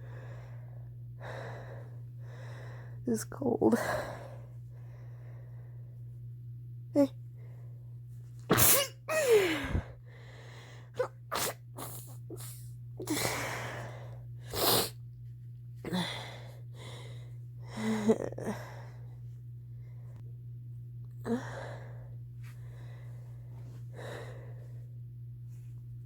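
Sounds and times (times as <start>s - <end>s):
muffled stifled sneezes: 8.5s - 9.4s, 11.0s - 13.2s.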